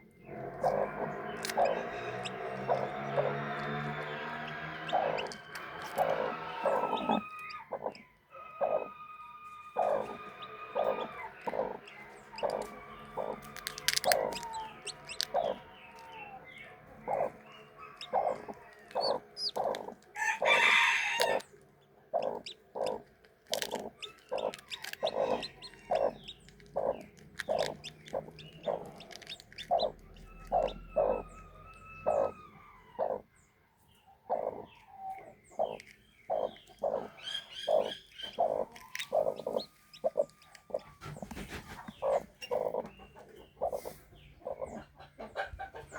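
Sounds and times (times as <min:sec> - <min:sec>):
harsh animal call: 0:00.3 - 0:07.7, 0:26.8 - 0:33.3.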